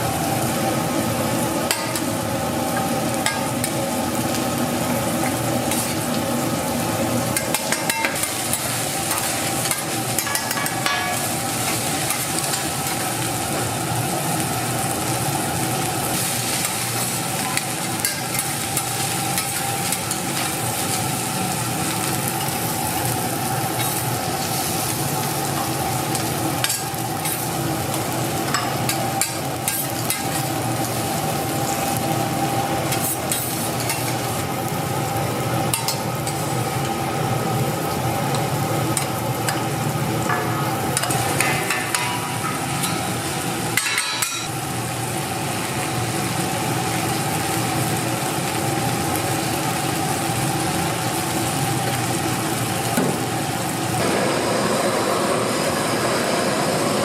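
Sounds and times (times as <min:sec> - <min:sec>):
rice sizzling on hot metal: 0:00.0 - 0:57.0.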